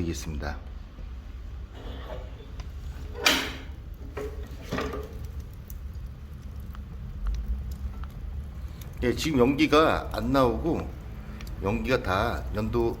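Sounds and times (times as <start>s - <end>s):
metal door clank or scrape: 3.0s - 5.1s
stove door latch clack: 3.1s - 5.2s
low steady rumble: 3.7s - 13.0s.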